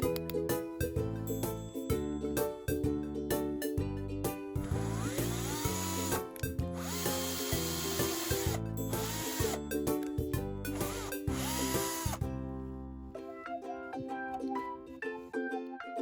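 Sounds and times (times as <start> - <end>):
background music: 0.0 - 16.0
power drill spinning: 4.6 - 9.6, 10.7 - 12.2.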